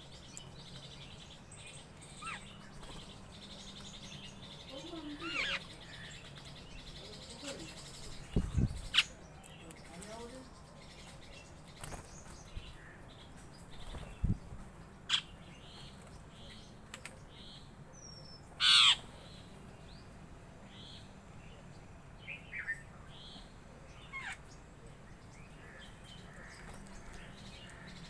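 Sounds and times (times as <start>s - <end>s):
birds chirping: 0.0s - 28.0s
loud harsh bird call: 18.6s - 19.2s.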